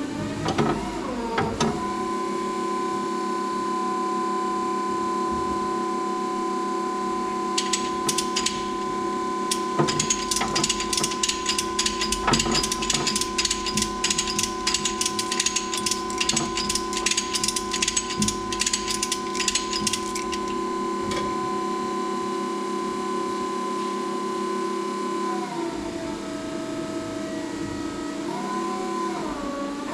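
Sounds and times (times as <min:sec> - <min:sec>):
ratchet wrench clicking: 0:07.6 - 0:08.8, 0:09.5 - 0:20.6.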